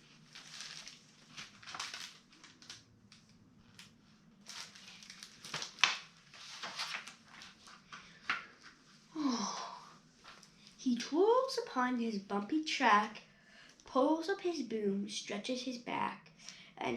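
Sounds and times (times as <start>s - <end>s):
paper rustling and crinkling: 0.0s - 8.8s.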